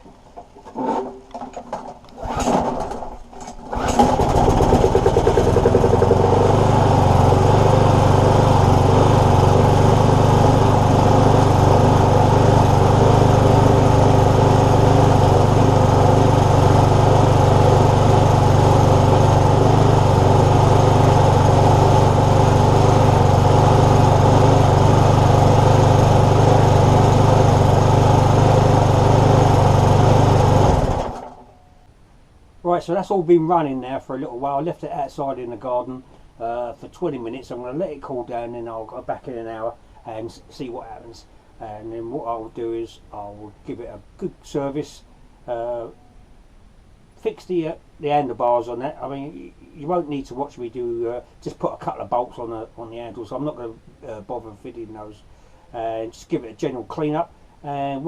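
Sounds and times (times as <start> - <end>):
lawnmower engine pull-started: 0.4 - 31.6
lawnmower engine running steadily: 2.1 - 31.6.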